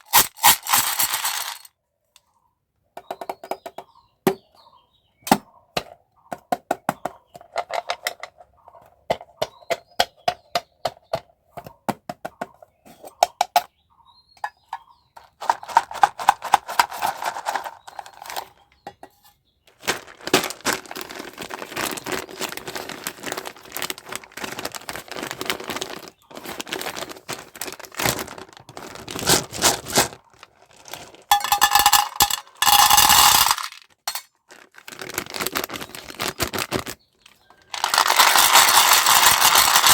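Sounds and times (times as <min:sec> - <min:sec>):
packaging crinkling and rustling: 0:15.4 - 0:18.6, 0:19.7 - 0:39.9.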